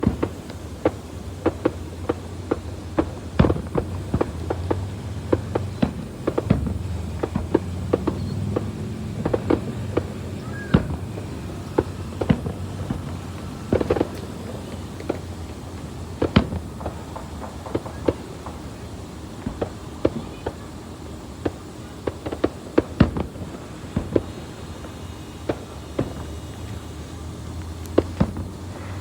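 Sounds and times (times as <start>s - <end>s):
fireworks popping and banging: 0.0s - 29.0s
low steady rumble: 1.8s - 17.8s.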